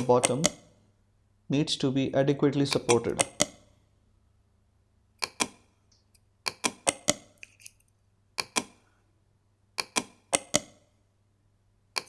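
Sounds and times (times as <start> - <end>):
computer mouse clicking: 0.0 - 0.7, 2.7 - 3.7, 5.2 - 7.8, 8.4 - 8.8, 9.8 - 10.8.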